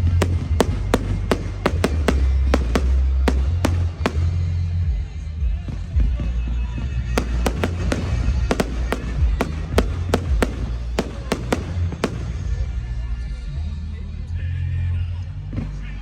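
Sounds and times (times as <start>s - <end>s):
fireworks bangs and crackles: 0.0s - 13.4s.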